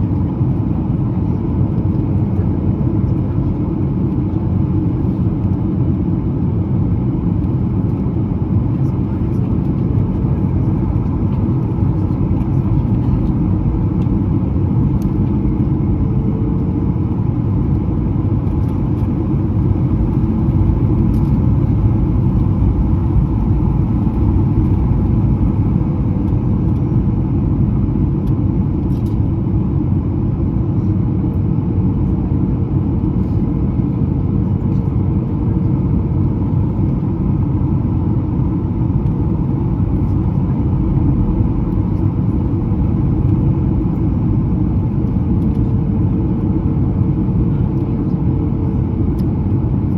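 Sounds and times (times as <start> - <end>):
jet engine rumble and rushing air: 0.0 - 49.9.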